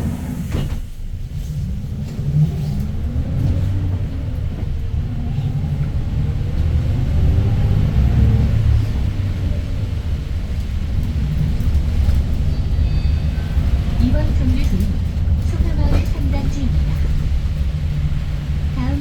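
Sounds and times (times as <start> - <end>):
bus engine running: 0.0 - 19.0.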